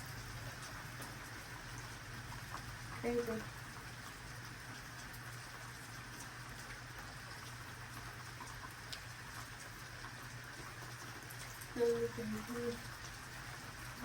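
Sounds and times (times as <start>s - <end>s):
raindrops ticking on a surface: 0.0s - 14.0s
steady rain falling: 0.0s - 14.0s.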